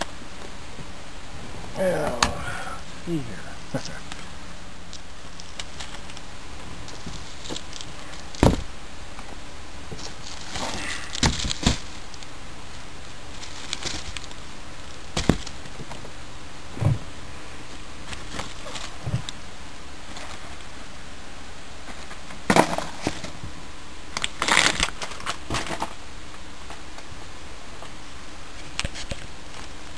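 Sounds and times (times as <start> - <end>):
packaging rustle: 5.2 - 8.7, 9.9 - 12.3, 13.3 - 16.0
packages knocking on hard surface: 8.4 - 8.7.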